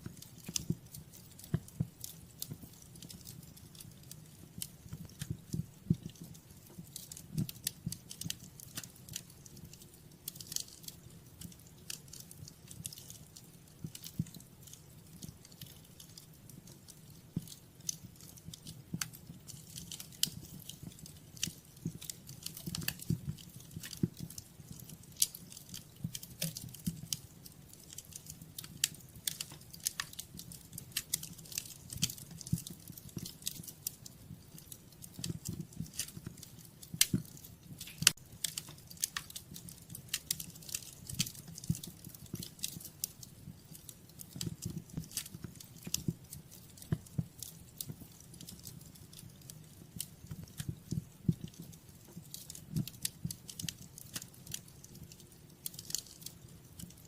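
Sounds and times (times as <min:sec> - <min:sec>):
low rumble of flames: 0:00.0 - 0:57.0
wood fire crackling and popping: 0:00.0 - 0:57.0.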